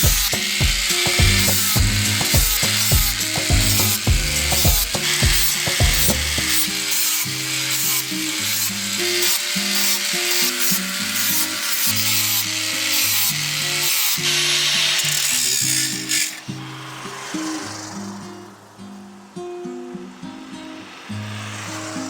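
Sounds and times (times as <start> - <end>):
background music with steady beat: 0.0 - 7.1
hissing workshop tool: 0.0 - 19.4, 20.2 - 22.0.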